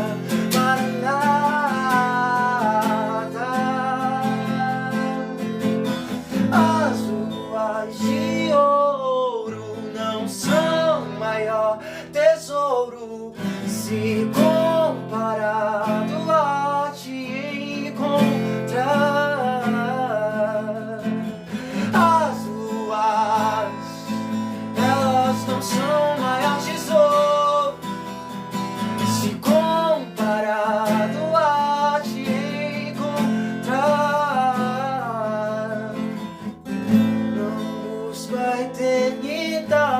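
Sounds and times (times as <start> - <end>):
person singing slow melody: 0.0 - 27.9, 28.8 - 39.9
acoustic guitar strumming: 0.0 - 39.9.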